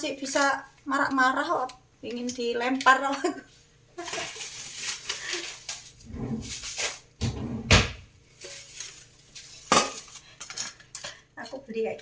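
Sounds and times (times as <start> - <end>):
heavy thud: 7.2 - 8.1
knocks and bumps of objects: 7.2 - 8.1.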